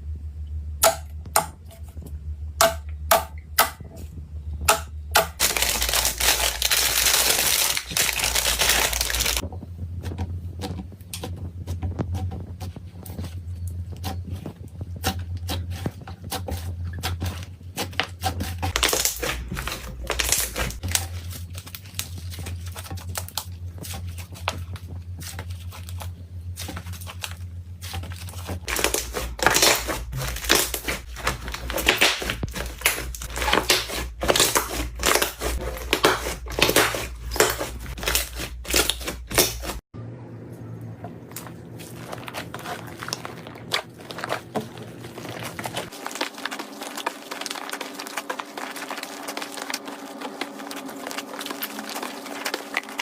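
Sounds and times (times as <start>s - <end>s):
low steady hum: 0.0s - 53.0s
slime crackling and popping: 5.2s - 9.4s, 17.8s - 39.8s, 41.3s - 53.0s.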